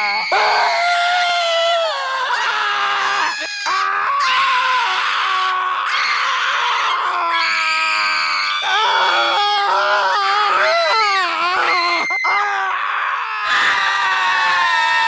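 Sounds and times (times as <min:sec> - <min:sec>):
high-pitched human screams: 0:00.0 - 0:15.0.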